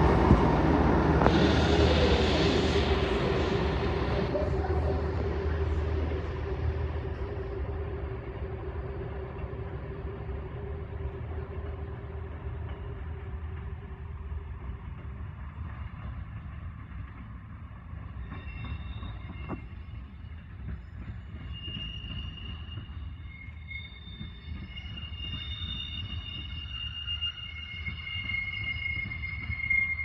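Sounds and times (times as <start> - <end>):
diesel train rumbling: 0.0 - 30.0
wheel squeal on curved track: 18.0 - 30.0.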